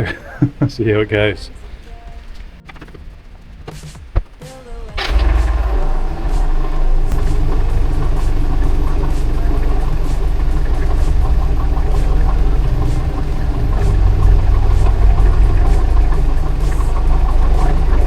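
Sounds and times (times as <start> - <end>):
vehicle engine running: 0.0 - 18.0.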